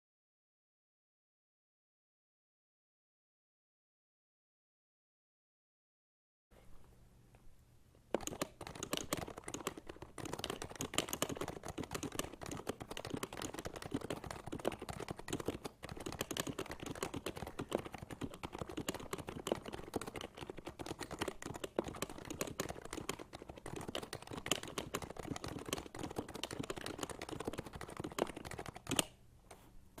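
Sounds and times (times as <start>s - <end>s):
fast typing on keyboard: 8.1s - 29.1s.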